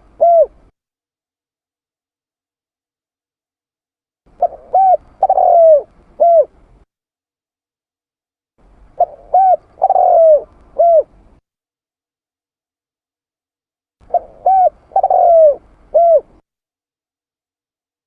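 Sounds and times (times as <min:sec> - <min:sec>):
dove cooing: 0:00.0 - 0:00.7, 0:04.4 - 0:06.7, 0:09.0 - 0:11.2, 0:14.0 - 0:16.4.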